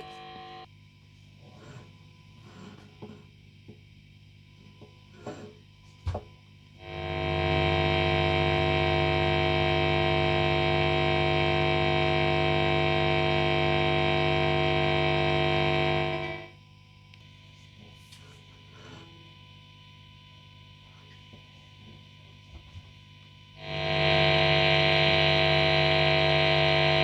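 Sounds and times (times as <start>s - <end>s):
electric guitar pickup buzz: 0.0s - 0.7s, 6.8s - 16.6s, 23.6s - 27.0s.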